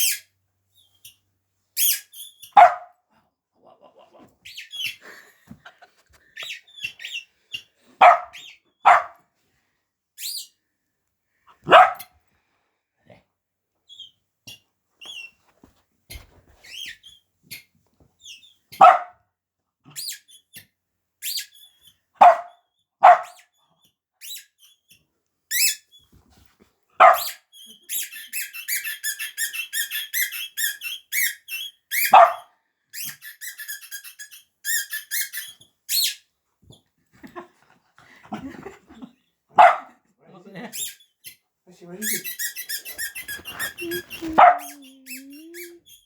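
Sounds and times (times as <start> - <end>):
dog barking: 2.5 - 3.0, 8.0 - 9.2, 11.6 - 12.2, 18.7 - 19.2, 22.2 - 23.4, 27.0 - 27.4, 32.1 - 32.5, 39.6 - 40.0, 44.2 - 44.9
high squeaks and clicks: 6.4 - 7.7, 27.2 - 32.4, 33.0 - 36.2, 42.0 - 46.0.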